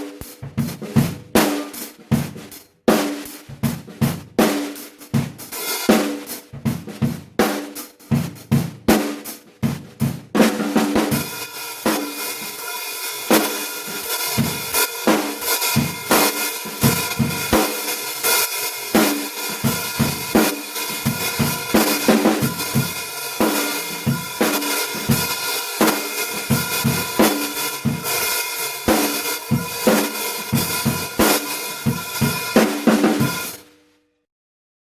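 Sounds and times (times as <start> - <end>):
kick and snare drums: 0.0 - 33.8
ringing cymbal wash: 11.2 - 32.6.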